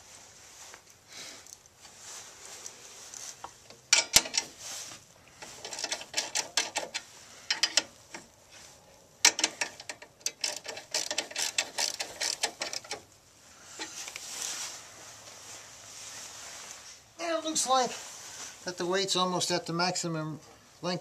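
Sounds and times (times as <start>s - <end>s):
metal clicks: 3.7s - 4.6s, 5.4s - 8.3s, 9.2s - 13.1s
metal scraping: 3.9s - 13.0s.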